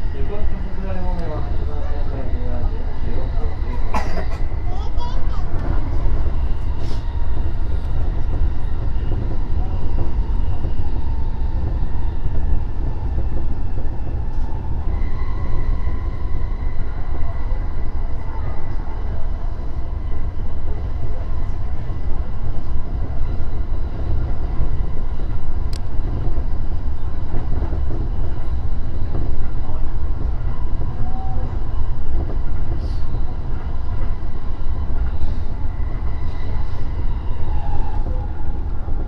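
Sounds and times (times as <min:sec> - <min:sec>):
train wheels rumbling on rail: 0:00.0 - 0:39.0.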